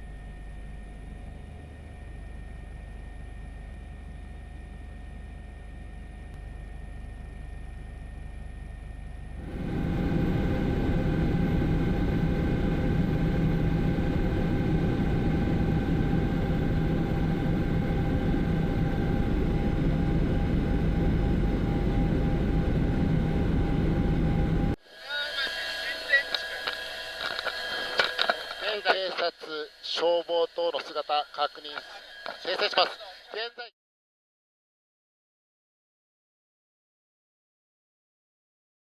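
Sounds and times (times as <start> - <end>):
helicopter engine and rotor: 0.0 - 33.6.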